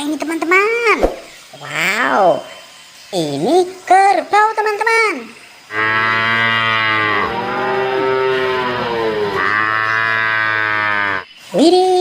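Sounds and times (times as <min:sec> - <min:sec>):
water buffalo lowing: 0:05.7 - 0:11.3.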